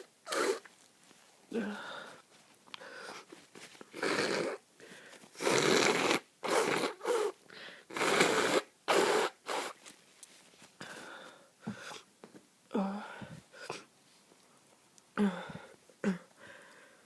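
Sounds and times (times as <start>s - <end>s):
person sniffing and snorting: 0.0s - 0.7s, 3.9s - 4.6s, 5.3s - 9.8s.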